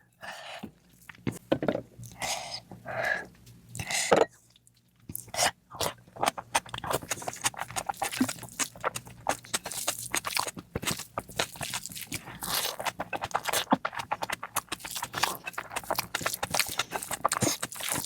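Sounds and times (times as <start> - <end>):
wet chewing and lip smacking: 5.1 - 18.0.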